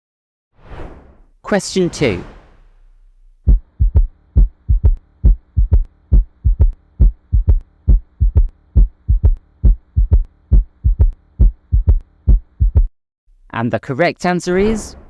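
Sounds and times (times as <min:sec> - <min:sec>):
faint hum: 0:02.7 - 0:13.5
heartbeat thuds: 0:03.4 - 0:12.9.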